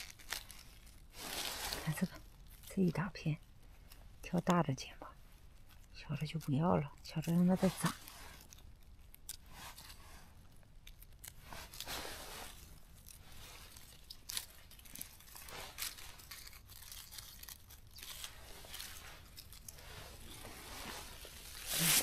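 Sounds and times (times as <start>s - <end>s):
rustling in leaf litter: 0.0s - 2.1s, 11.5s - 22.0s.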